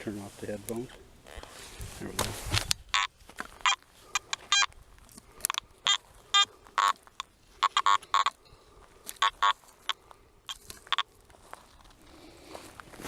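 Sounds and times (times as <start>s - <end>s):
metal detector beeps: 2.9s - 4.8s, 5.4s - 11.0s.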